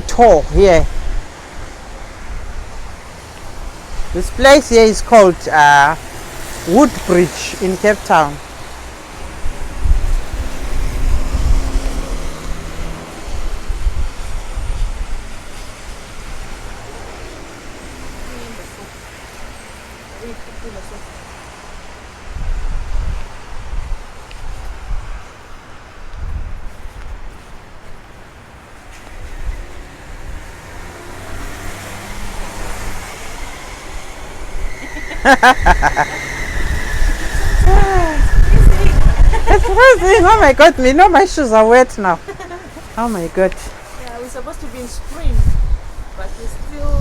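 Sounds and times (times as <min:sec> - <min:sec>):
wind buffeting the microphone: 0:00.0 - 0:05.1, 0:08.6 - 0:18.8, 0:21.7 - 0:47.0
road traffic noise: 0:00.0 - 0:47.0
vehicle engine rumbling: 0:05.4 - 0:22.0, 0:28.8 - 0:47.0.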